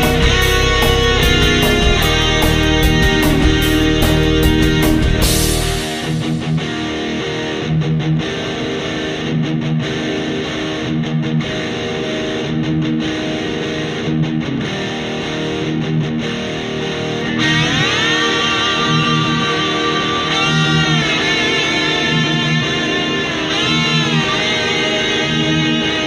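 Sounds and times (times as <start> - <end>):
guitar background music: 0.0 - 26.0.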